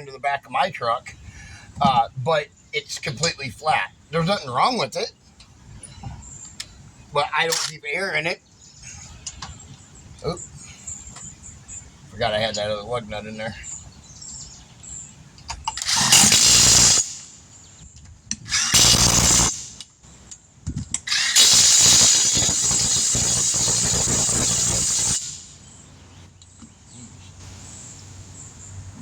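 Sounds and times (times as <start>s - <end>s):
impact wrench running: 15.8s - 17.2s, 18.5s - 19.8s, 21.1s - 25.5s.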